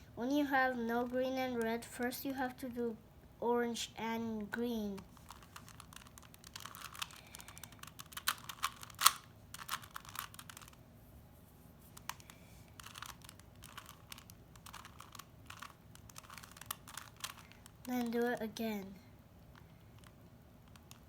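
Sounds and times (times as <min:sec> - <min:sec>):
puzzle cube plastic clicks: 0:05.0 - 0:10.8, 0:12.0 - 0:18.4, 0:19.4 - 0:21.0.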